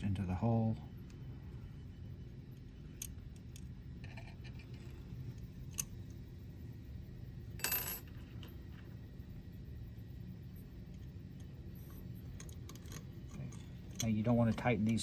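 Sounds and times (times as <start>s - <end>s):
metal clicks of small screws: 12.3s - 15.0s.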